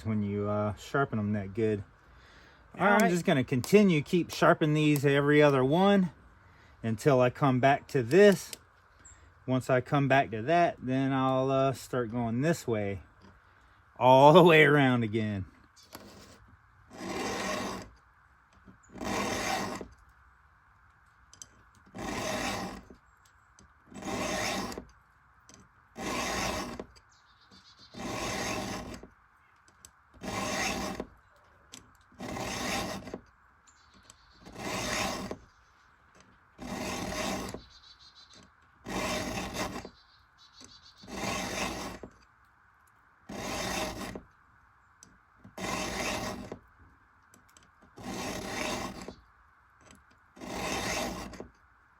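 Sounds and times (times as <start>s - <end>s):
file rasping on chainsaw chain: 2.8s - 6.0s, 14.4s - 18.0s, 18.9s - 19.9s, 21.8s - 23.0s, 23.9s - 25.0s, 26.0s - 27.0s, 27.8s - 29.1s, 30.2s - 31.1s, 32.2s - 33.3s, 34.4s - 35.5s, 36.6s - 40.0s, 41.0s - 42.2s, 43.3s - 44.3s, 45.5s - 46.6s, 48.0s - 49.2s, 50.4s - 51.5s.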